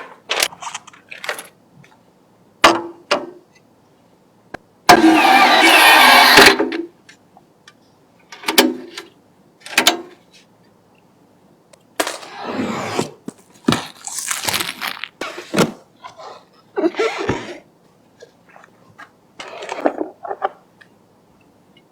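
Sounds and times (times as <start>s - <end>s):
packaging rustling: 13.3s - 15.8s.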